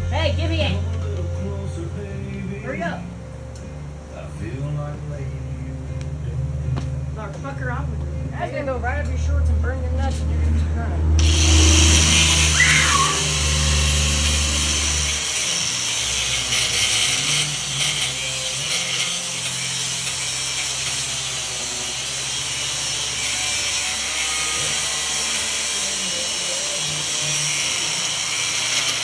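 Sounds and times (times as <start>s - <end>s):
low hum: 0.0s - 15.2s
angle grinder cutting metal: 11.1s - 29.0s.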